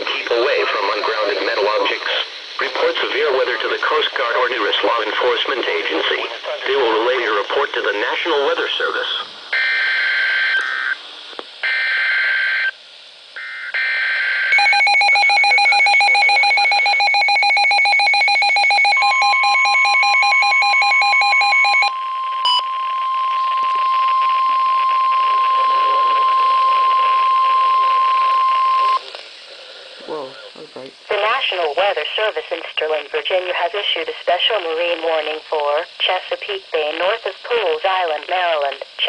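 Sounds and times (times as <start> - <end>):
screechy data tones: 13.4 - 29.0
steady warning alarm tone: 13.4 - 29.0.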